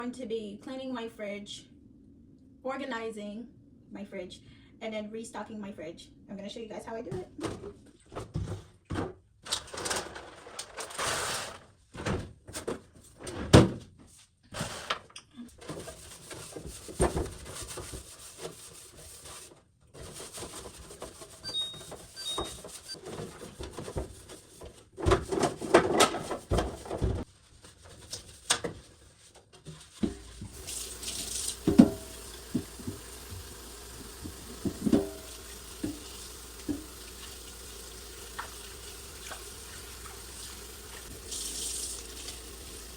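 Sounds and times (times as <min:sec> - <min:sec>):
household items clattering: 0:20.2 - 0:27.2, 0:29.6 - 0:42.5.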